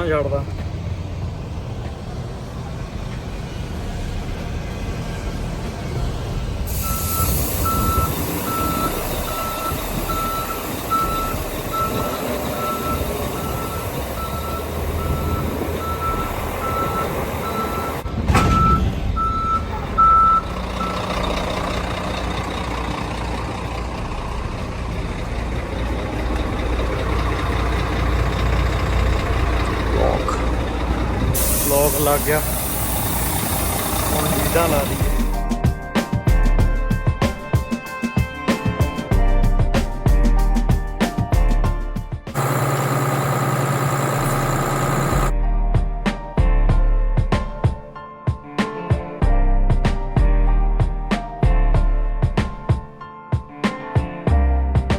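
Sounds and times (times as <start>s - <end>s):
truck engine running: 0.0s - 35.6s, 41.4s - 45.4s
reversing alarm beeping: 6.7s - 22.4s, 31.3s - 35.3s, 42.4s - 45.3s
loud metal clunk: 18.1s - 19.9s.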